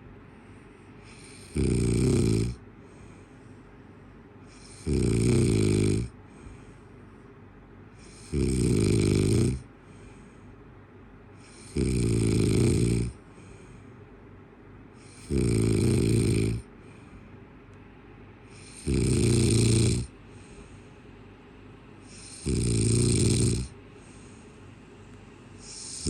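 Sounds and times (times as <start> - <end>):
faint breathing: 0.0 - 1.8, 2.5 - 5.0, 6.1 - 8.5, 9.6 - 11.9, 13.1 - 17.7, 18.3 - 26.0
rasping snores: 1.0 - 2.6, 4.5 - 6.4, 8.0 - 9.7, 11.4 - 13.5, 15.0 - 16.7, 18.5 - 20.1, 22.1 - 24.2, 25.6 - 26.0.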